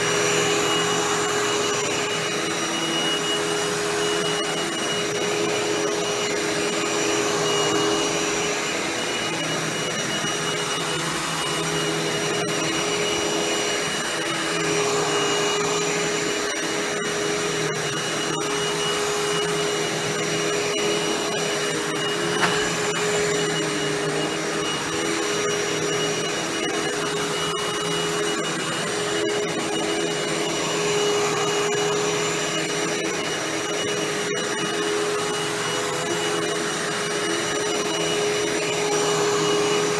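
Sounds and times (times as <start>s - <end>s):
upright vacuum cleaner running: 0.0s - 39.9s.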